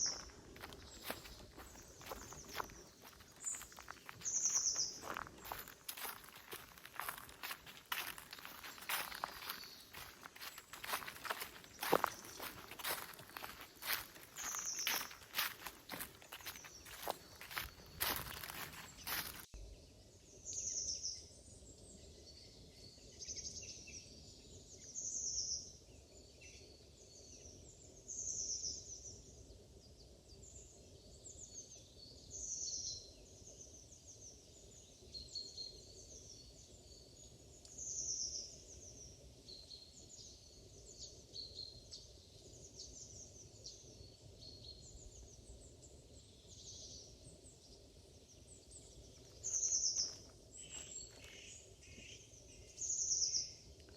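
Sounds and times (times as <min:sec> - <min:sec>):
high-pitched bird calls: 0:00.0 - 0:19.4
wild birds chirping: 0:00.0 - 0:19.5, 0:26.1 - 0:53.9.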